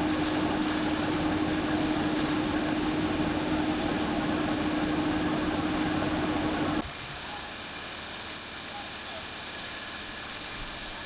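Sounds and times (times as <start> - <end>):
machine humming: 0.0 - 6.8.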